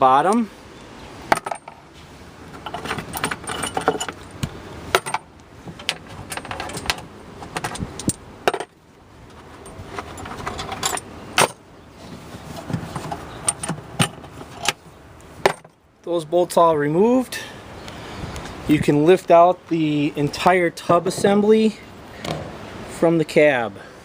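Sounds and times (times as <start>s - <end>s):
metallic clinks of bolts and tools: 2.6s - 8.7s, 9.6s - 11.6s.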